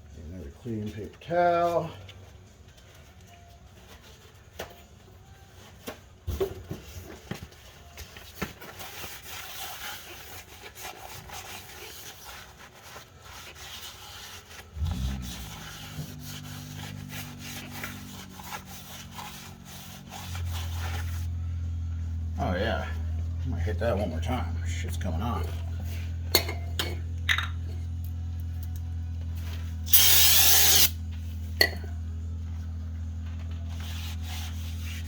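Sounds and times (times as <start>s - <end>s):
paper towel wiping metal: 8.8s - 21.4s, 33.7s - 35.0s
low machine hum: 14.8s - 29.9s, 30.9s - 35.0s.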